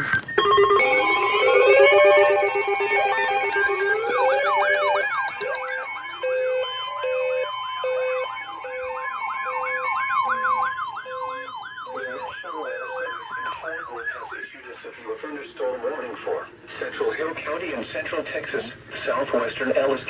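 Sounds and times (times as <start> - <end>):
low pulsing beep: 0.0 - 14.3
yelping siren tone: 0.0 - 14.4
steady higher tone: 0.4 - 14.3.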